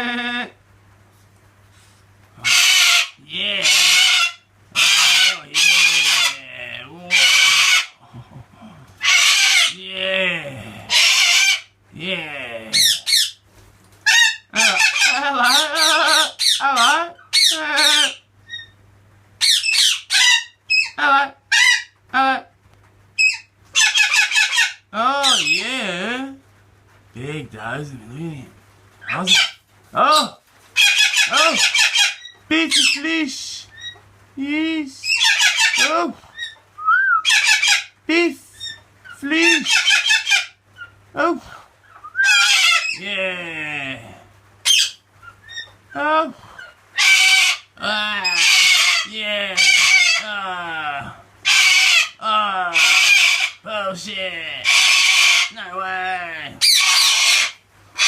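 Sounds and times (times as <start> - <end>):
parrot squawking: 2.4 - 8.0, 9.0 - 9.8, 10.9 - 11.8, 12.7 - 13.4, 14.0 - 18.8, 19.4 - 22.0, 23.2 - 25.6, 29.0 - 30.2, 30.8 - 33.0, 33.7 - 34.0, 35.0 - 36.6, 37.2 - 41.0, 41.9 - 43.0, 44.6 - 45.9, 46.6 - 50.3, 51.4 - 53.7, 54.6 - 58.0.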